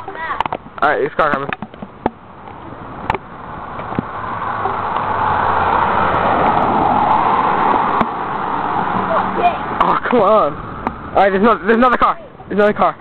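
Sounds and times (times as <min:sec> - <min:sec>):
car passing by: 0:02.6 - 0:11.9.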